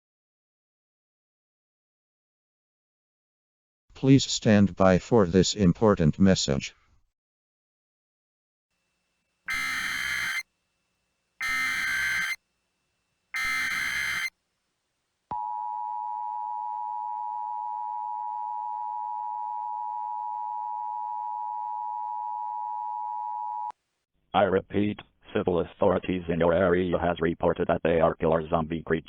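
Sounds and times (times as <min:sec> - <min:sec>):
digital header data bursts: 0:09.5 - 0:10.4, 0:11.4 - 0:12.4, 0:13.4 - 0:14.3
two-tone attention signal: 0:09.5 - 0:10.4, 0:11.4 - 0:12.4, 0:13.4 - 0:14.3.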